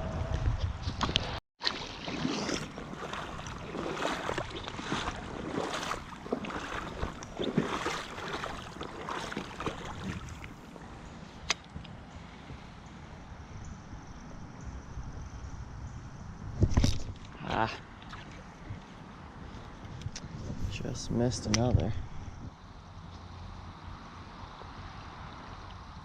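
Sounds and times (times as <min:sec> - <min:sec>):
water splashing in a stream: 0:01.6 - 0:10.9.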